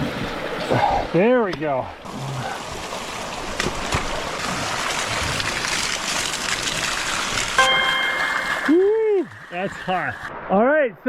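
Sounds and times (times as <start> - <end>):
water running from a hose: 1.7 - 10.3.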